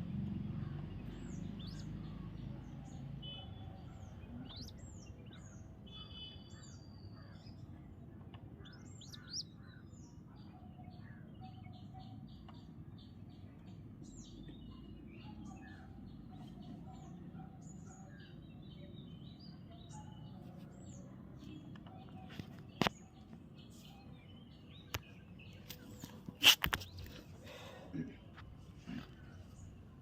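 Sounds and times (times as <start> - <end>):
birds chirping: 0.1 - 30.0.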